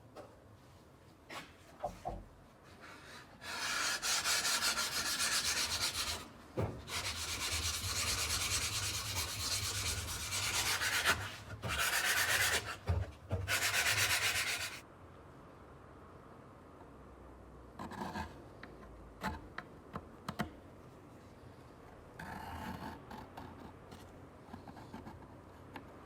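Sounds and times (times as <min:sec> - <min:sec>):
abrasive sanding on knife: 0:03.4 - 0:06.3, 0:06.9 - 0:12.8, 0:13.5 - 0:14.8.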